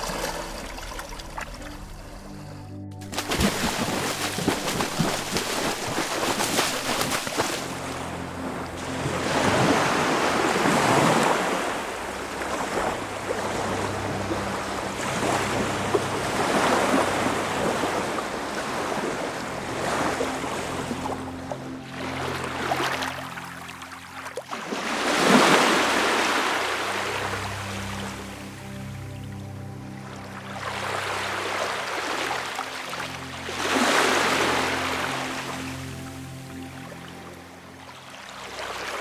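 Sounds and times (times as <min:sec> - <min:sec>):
water lapping and splashing: 0:00.0 - 0:39.0
waves splashing on rocky shore: 0:03.1 - 0:07.9.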